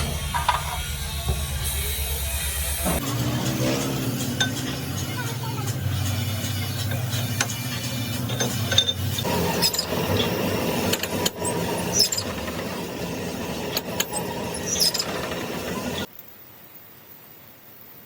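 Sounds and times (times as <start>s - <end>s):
steady workshop noise: 0.0s - 16.1s.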